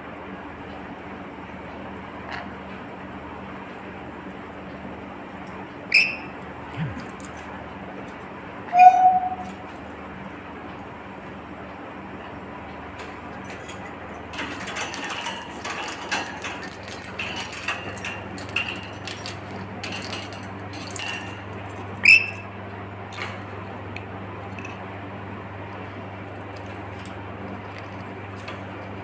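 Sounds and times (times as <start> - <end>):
steady low hum: 0.0 - 29.0
parrot squawk: 8.7 - 9.5, 22.0 - 22.4
light clinking and rattling: 13.4 - 21.8.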